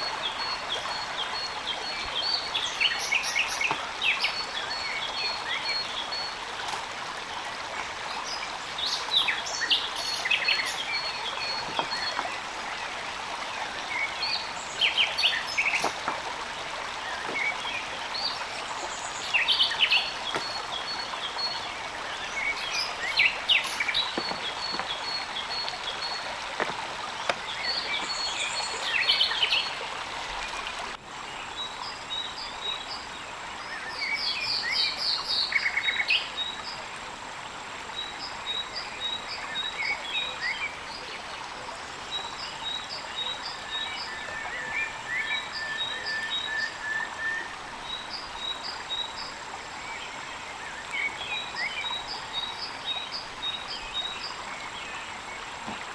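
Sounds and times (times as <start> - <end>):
birds chirping: 0.0 - 33.1.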